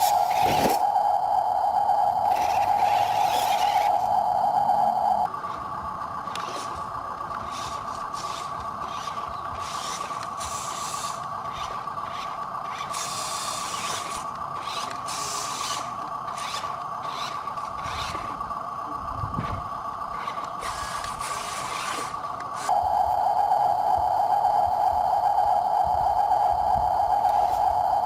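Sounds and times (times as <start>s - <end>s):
model truck motor whining: 0.0s - 23.3s, 25.8s - 28.0s
scraping rasping noise: 19.4s - 22.7s.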